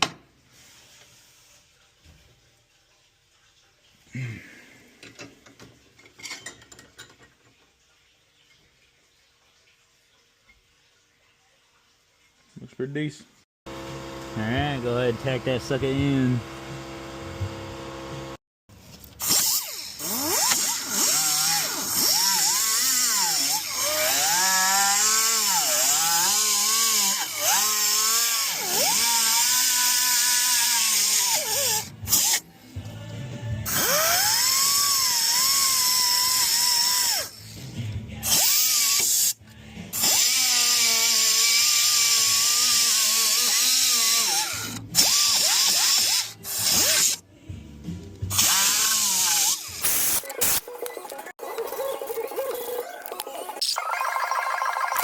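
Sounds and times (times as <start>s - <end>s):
power tool cutting sheet metal: 19.2s - 32.5s, 33.7s - 37.5s, 38.2s - 47.2s, 48.3s - 50.6s.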